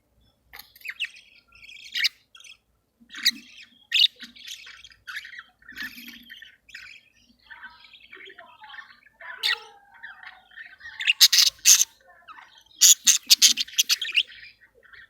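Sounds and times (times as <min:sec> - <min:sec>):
budgerigars chattering: 0:00.8 - 0:15.0
loud sharp squawking chirps: 0:11.0 - 0:11.9, 0:12.8 - 0:14.3.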